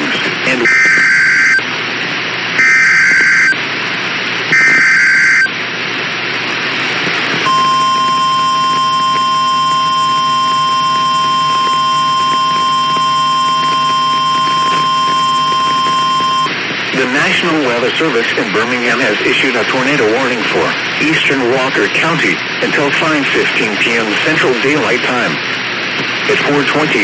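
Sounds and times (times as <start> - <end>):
single-pitch warning tone: 0.5 - 1.7, 2.6 - 3.6, 4.5 - 5.5, 7.4 - 16.6
shrill digital data tone bursts: 2.6 - 3.6, 4.5 - 5.5, 7.5 - 16.5.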